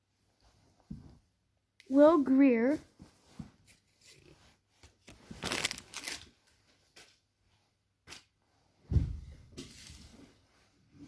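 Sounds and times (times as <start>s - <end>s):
trading cards shuffling: 3.7s - 6.3s
low thump: 8.9s - 9.4s.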